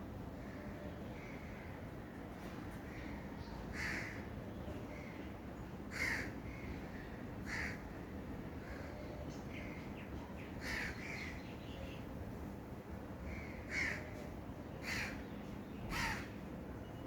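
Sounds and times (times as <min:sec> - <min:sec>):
low background noise: 0:00.0 - 0:17.0
crow cawing: 0:03.7 - 0:04.2, 0:05.9 - 0:06.7, 0:07.5 - 0:07.8, 0:10.6 - 0:11.1, 0:13.3 - 0:14.1, 0:14.8 - 0:15.2, 0:15.9 - 0:16.3.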